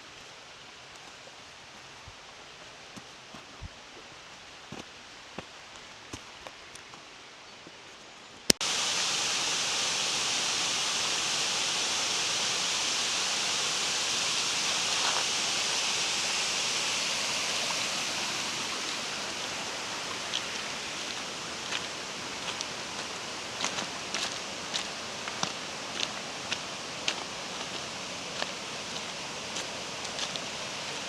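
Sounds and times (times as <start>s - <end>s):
waterfall rushing: 8.6s - 31.0s.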